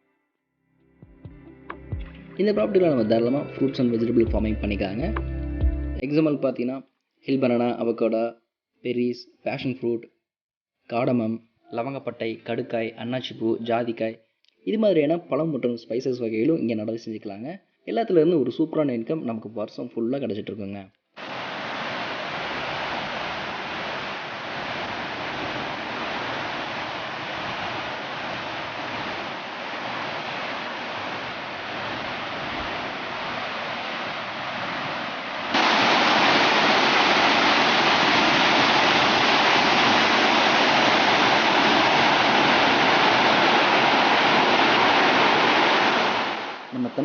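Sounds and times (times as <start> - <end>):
waterfall rushing over rock: 21.2 - 47.0.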